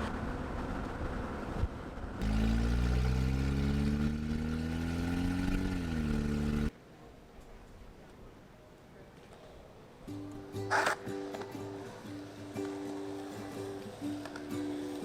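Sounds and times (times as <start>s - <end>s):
road hum: 0.0s - 6.8s
car engine accelerating: 2.2s - 6.7s.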